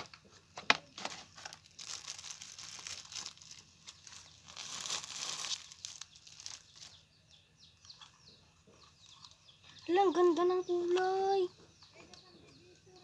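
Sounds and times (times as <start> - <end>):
plastic packaging crinkling: 0.0 - 7.0.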